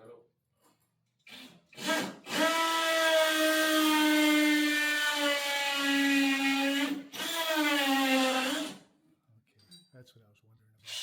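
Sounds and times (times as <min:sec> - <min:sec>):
power tool motor whining: 0:01.3 - 0:08.8.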